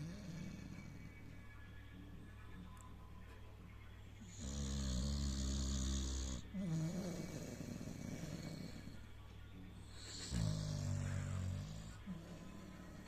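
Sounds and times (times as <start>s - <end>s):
dog snoring: 0.0s - 1.4s, 4.2s - 9.0s, 9.8s - 13.0s.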